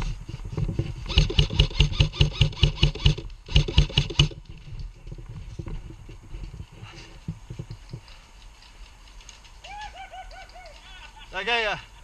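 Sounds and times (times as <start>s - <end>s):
airsoft rifle rapid shots: 1.1s - 4.4s.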